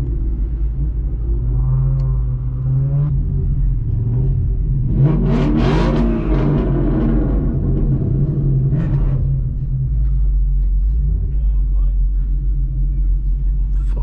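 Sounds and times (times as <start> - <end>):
car engine droning: 0.0 - 14.0
engine revving hard: 4.8 - 9.4.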